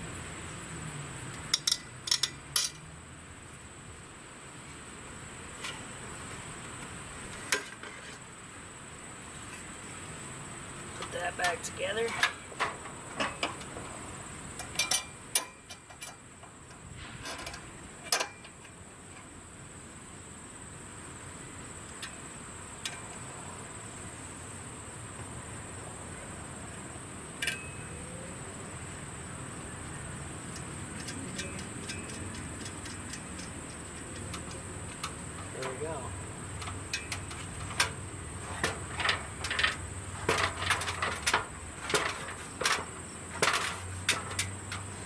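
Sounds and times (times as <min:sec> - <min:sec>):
faint steady hiss: 0:00.0 - 0:45.0
metal pipe parts clicking: 0:01.4 - 0:02.8, 0:14.6 - 0:18.7, 0:30.5 - 0:35.5, 0:36.6 - 0:44.9.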